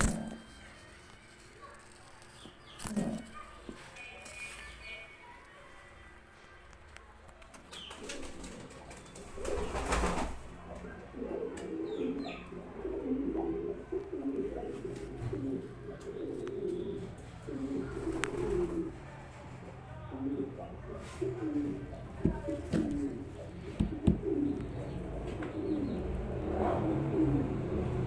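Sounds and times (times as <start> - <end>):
pigeon cooing: 0.0 - 0.7, 2.4 - 4.5, 7.8 - 19.1, 20.0 - 28.0.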